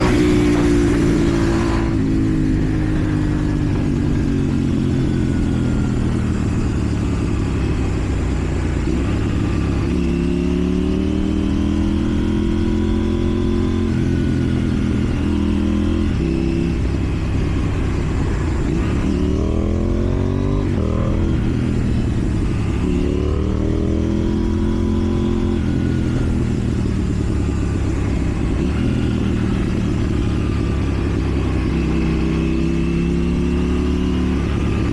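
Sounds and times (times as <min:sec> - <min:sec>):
motorcycle engine accelerating: 0:00.0 - 0:34.9.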